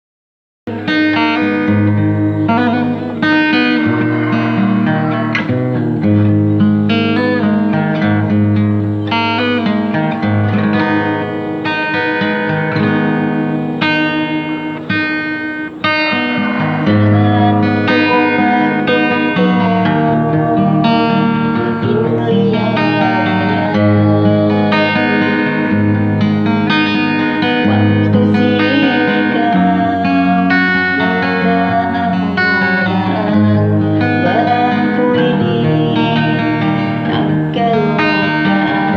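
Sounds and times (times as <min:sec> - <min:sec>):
plucked guitar notes: 0:00.7 - 0:38.9
steady bass line: 0:16.2 - 0:38.9.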